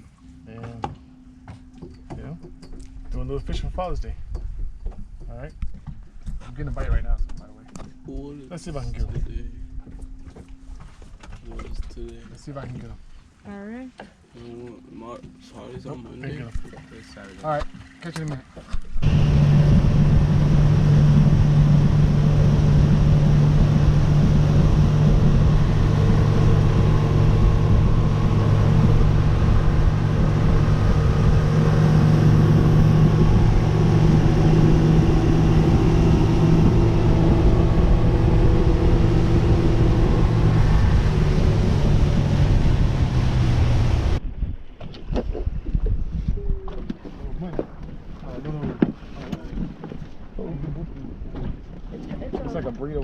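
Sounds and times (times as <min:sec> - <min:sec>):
motorboat engine running: 0:00.0 - 0:53.0
water rushing past hull: 0:16.4 - 0:46.1
wind buffeting microphone: 0:18.9 - 0:53.0.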